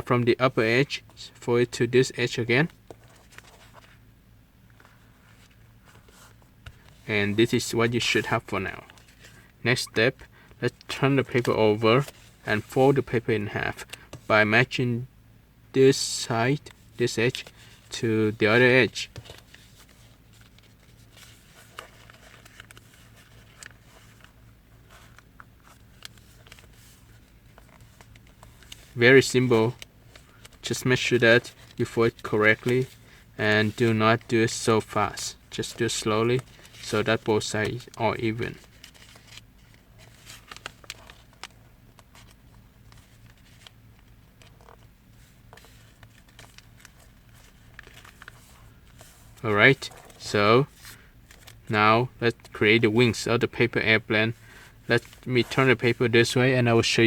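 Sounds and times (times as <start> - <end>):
low steady hum: 0.0 - 57.0
paper rustling: 2.9 - 4.0, 16.7 - 52.6, 54.4 - 57.0.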